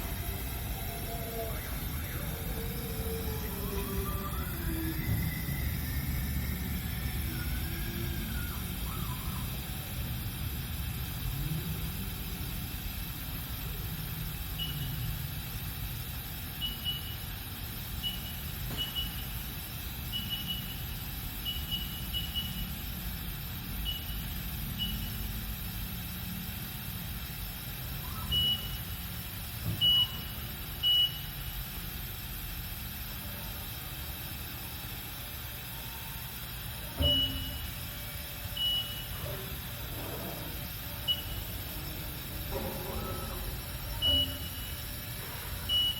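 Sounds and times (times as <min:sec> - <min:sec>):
high electronic beeps: 0:00.0 - 0:10.3, 0:14.5 - 0:15.2, 0:20.0 - 0:22.8, 0:27.8 - 0:29.0, 0:36.9 - 0:39.7, 0:40.5 - 0:45.9
machine humming: 0:00.0 - 0:45.9.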